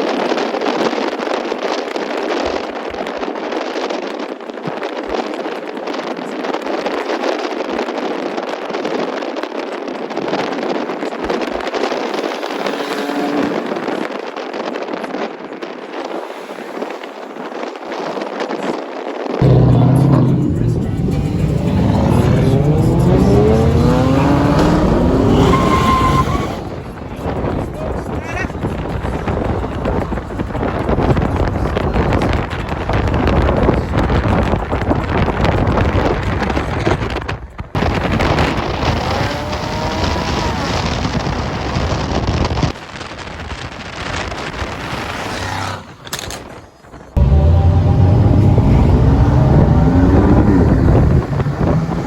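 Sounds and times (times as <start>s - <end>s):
road noise: 0.0s - 52.0s
wind buffeting microphone: 0.0s - 52.0s
car engines: 0.1s - 42.6s, 43.6s - 52.0s
car engine accelerating hard: 11.2s - 15.0s, 19.4s - 27.6s, 37.8s - 41.6s, 47.2s - 52.0s.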